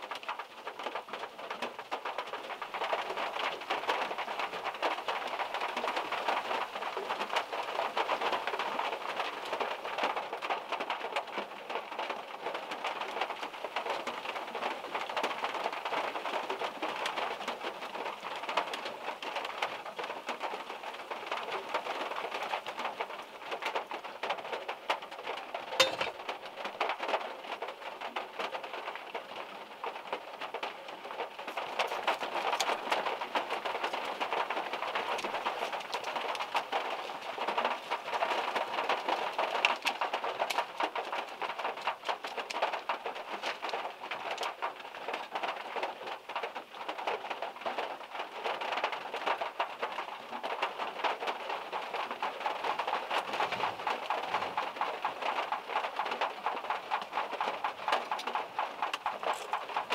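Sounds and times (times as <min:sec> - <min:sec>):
heavy rain on a car: 0:00.0 - 0:59.9.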